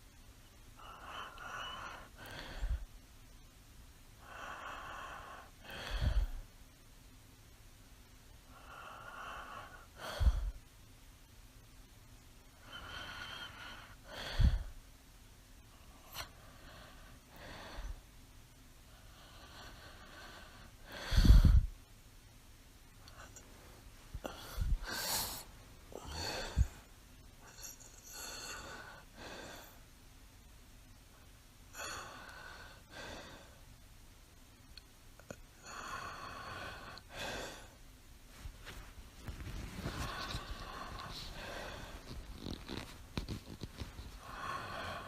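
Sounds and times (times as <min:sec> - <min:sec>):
woman breathing in sleep: 0:00.8 - 0:02.9, 0:04.2 - 0:06.5, 0:08.5 - 0:10.6, 0:12.6 - 0:14.8, 0:15.7 - 0:18.0, 0:18.9 - 0:21.8, 0:24.1 - 0:29.8, 0:31.7 - 0:33.6, 0:35.3 - 0:37.8, 0:39.3 - 0:45.0.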